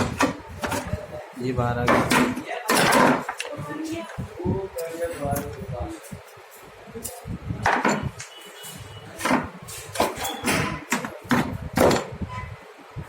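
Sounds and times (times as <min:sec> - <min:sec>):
plastic knocks and clacks: 0:01.8 - 0:03.5, 0:09.2 - 0:12.2.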